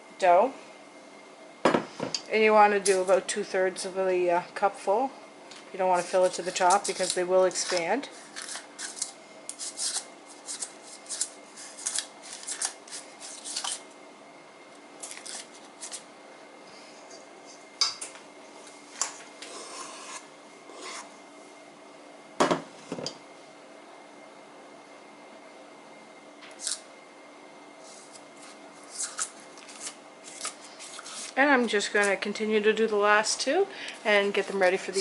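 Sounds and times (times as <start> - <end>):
faint steady hum: 0.0 - 35.0
spoon scraping batter: 6.0 - 13.8.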